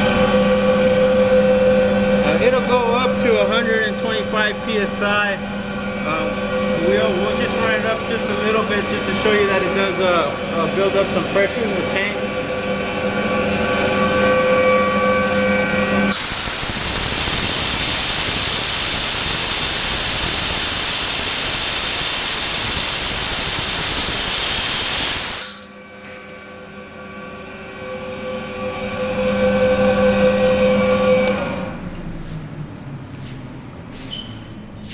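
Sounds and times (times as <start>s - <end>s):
air compressor whine: 0.0s - 34.9s
compressed air venting: 16.1s - 25.7s.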